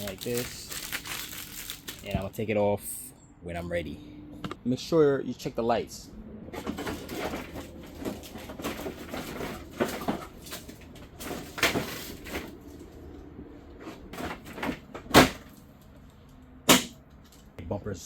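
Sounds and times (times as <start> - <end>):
plastic rustling and scraping: 0.0 - 2.3, 6.6 - 13.1, 13.7 - 16.0.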